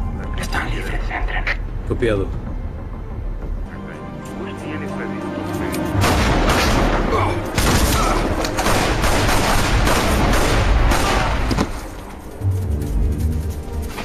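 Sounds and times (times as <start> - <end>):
film score: 0.0 - 14.0
heavy gunfire: 7.6 - 11.8.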